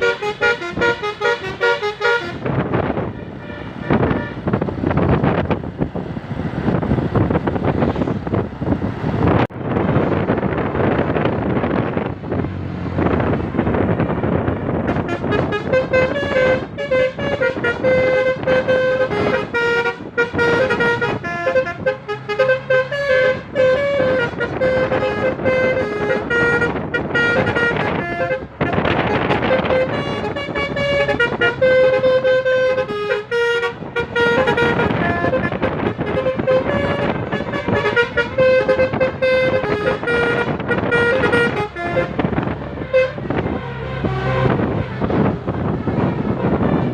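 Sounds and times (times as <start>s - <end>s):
musical horn playing a tune: 0.0s - 4.6s, 14.8s - 46.9s
road and wind noise: 0.0s - 46.9s.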